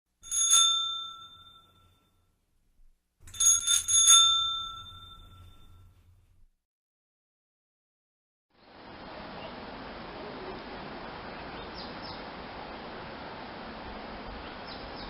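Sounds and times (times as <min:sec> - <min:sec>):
small bell ringing: 0:00.2 - 0:02.3, 0:03.3 - 0:06.1.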